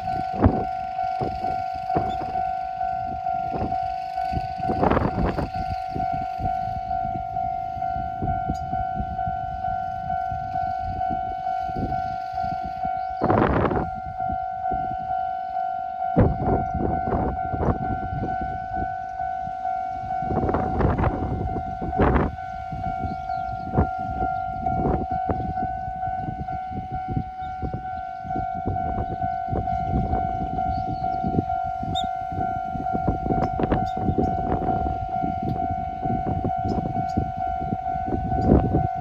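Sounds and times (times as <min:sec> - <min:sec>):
train wheels rumbling and clacking: 0:00.0 - 0:13.8
level crossing bell ringing: 0:13.9 - 0:39.0.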